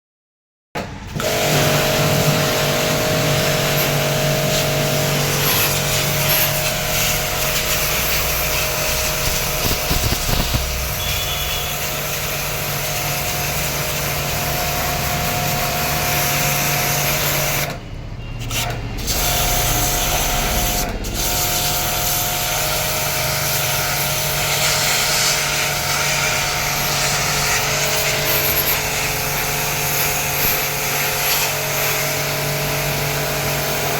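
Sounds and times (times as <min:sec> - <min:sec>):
washing machine running: 0:00.8 - 0:33.9.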